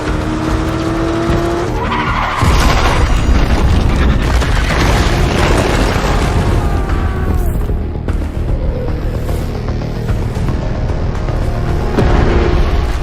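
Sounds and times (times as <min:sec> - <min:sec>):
engine revving: 0:00.0 - 0:02.2
tyres skidding: 0:00.0 - 0:13.0.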